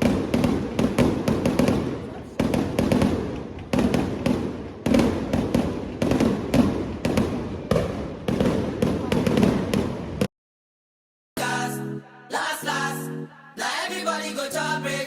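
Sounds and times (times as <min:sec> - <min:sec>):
fireworks blasts with crackle: 0:00.0 - 0:10.3.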